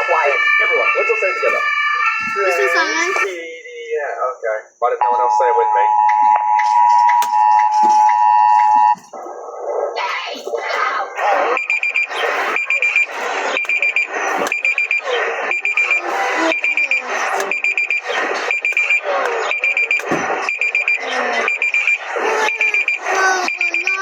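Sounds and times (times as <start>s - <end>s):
rapid high-pitched alarm beeps: 0.0s - 3.4s, 11.2s - 24.0s.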